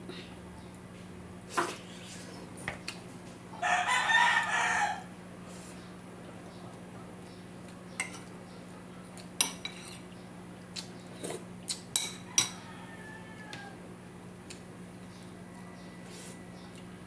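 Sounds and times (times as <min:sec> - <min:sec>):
cutlery clinking on dishes: 0:09.4 - 0:10.1, 0:11.2 - 0:12.6.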